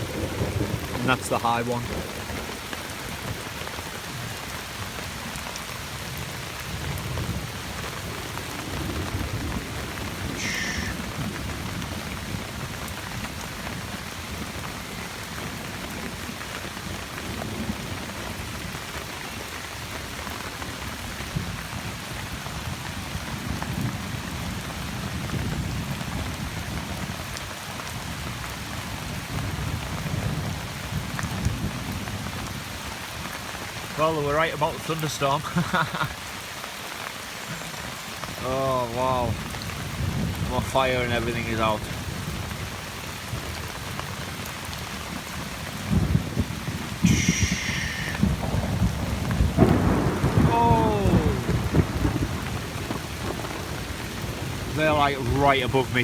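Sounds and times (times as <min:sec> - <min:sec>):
thunder rumbling: 0:00.0 - 0:27.2, 0:38.3 - 0:56.0
heavy rain pouring: 0:00.0 - 0:56.0.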